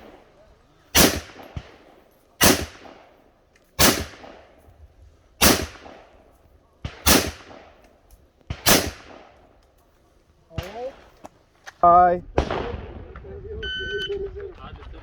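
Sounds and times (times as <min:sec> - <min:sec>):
fainter rifle shots: 0:00.9 - 0:03.2, 0:03.8 - 0:04.6, 0:05.4 - 0:07.9, 0:08.5 - 0:09.6
loud rifle shots with echo: 0:00.9 - 0:03.2, 0:03.8 - 0:04.6, 0:05.4 - 0:06.2, 0:06.8 - 0:07.8, 0:08.5 - 0:09.5, 0:12.4 - 0:13.0.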